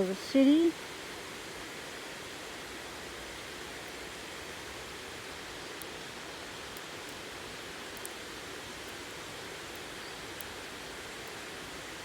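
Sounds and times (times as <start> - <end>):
faint high ticks: 7.9 - 8.2.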